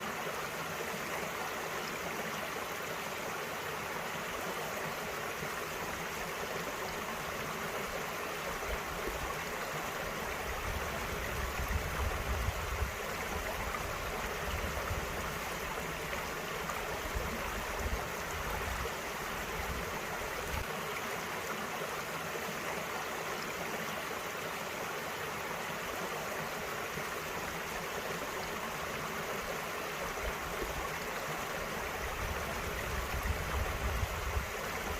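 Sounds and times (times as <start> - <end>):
stream flowing: 0.0 - 34.9.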